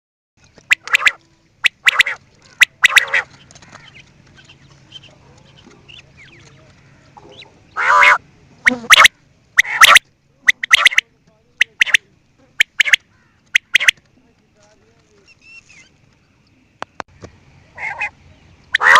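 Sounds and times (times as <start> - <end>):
quail calling: 0.6 - 14.0, 17.7 - 18.9
faint chirps: 8.6 - 18.9.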